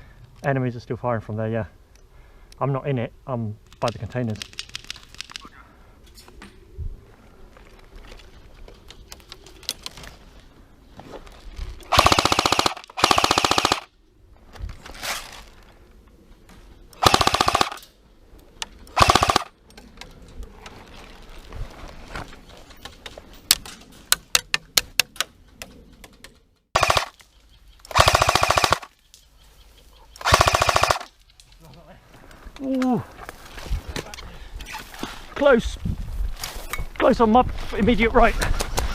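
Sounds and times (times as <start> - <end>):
airsoft guns firing bursts: 11.9 - 13.9, 17.0 - 17.8, 19.0 - 19.5, 26.8 - 27.2, 27.9 - 28.9, 30.2 - 31.1.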